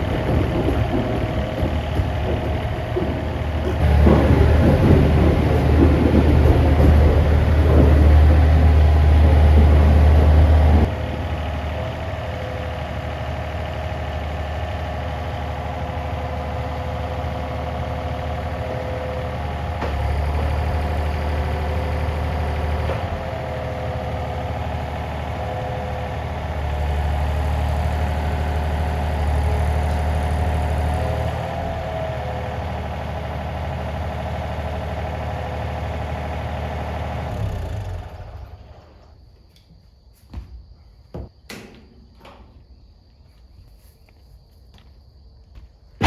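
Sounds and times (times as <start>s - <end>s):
excavator diesel engine running: 0.0s - 39.3s.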